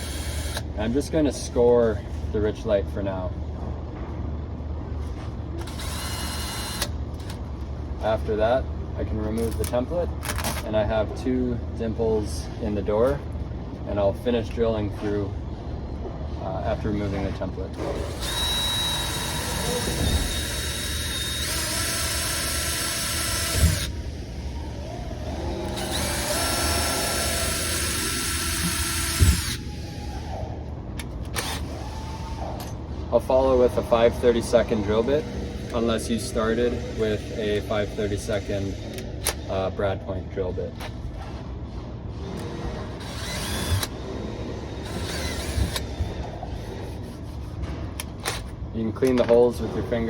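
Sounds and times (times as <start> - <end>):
power drill drilling through wood: 0.0 - 0.6, 18.0 - 23.9, 25.7 - 29.6, 43.0 - 43.9, 44.8 - 45.8.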